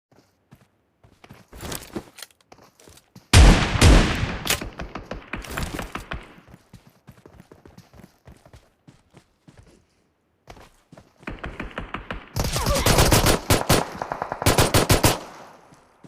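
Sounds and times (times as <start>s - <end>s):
pistol shots echoing: 11.3s - 15.6s.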